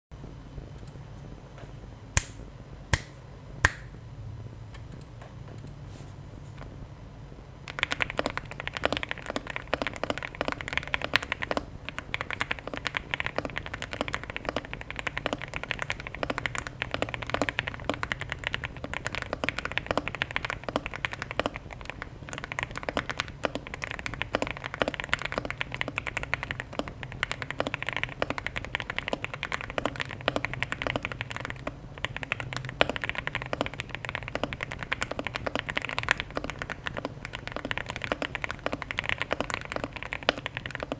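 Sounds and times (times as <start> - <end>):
fast typing on mechanical keyboard: 7.7 - 40.9.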